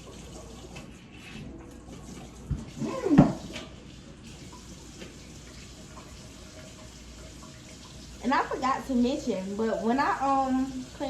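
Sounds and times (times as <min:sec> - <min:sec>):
tap water running into sink: 0:00.0 - 0:11.0
knocks against sink: 0:02.5 - 0:03.4.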